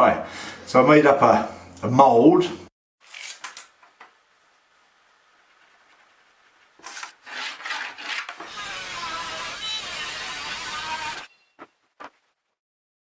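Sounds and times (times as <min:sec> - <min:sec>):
rough rubbing on wood: 0:06.8 - 0:09.0
rasping strokes on wood: 0:06.9 - 0:11.2.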